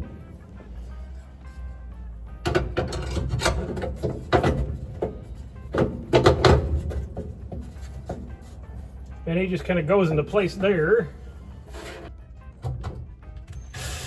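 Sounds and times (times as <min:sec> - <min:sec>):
plastic cover plate knocking: 0:02.5 - 0:08.5.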